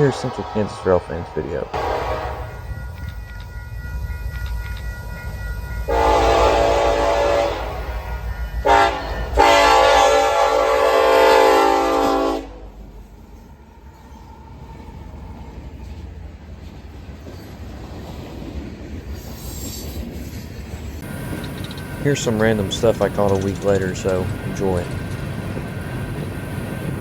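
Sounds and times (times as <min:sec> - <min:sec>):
locomotive horn blasts: 0:01.7 - 0:03.1, 0:05.8 - 0:12.8
locomotive engine rumble: 0:20.0 - 0:27.0.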